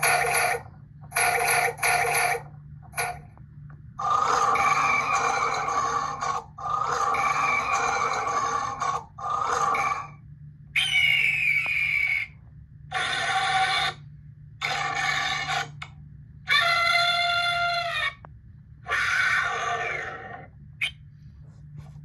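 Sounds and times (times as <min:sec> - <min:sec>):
steady low hum: 0:00.0 - 0:22.0
electronic toy roars and cries: 0:04.0 - 0:10.2, 0:10.8 - 0:12.3, 0:12.9 - 0:14.0, 0:14.6 - 0:15.8, 0:16.4 - 0:20.5.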